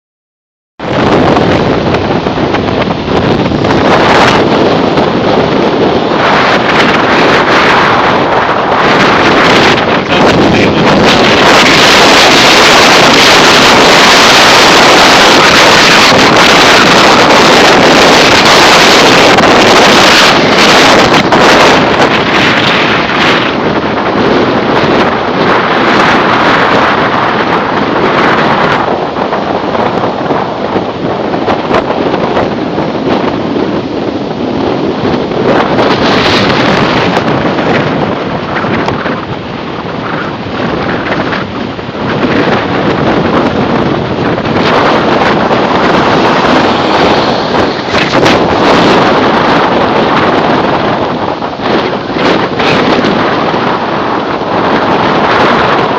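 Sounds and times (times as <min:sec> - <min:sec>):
strong wind on microphone: 0:00.8 - 0:55.9.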